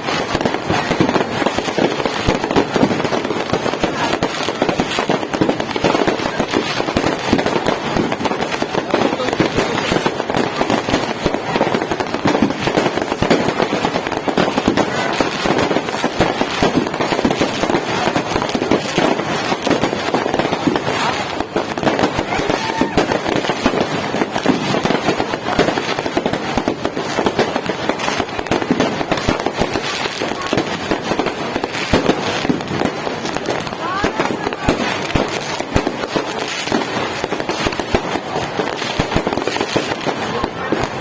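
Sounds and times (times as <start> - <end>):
fireworks bangs and crackling: 0.0 - 41.0.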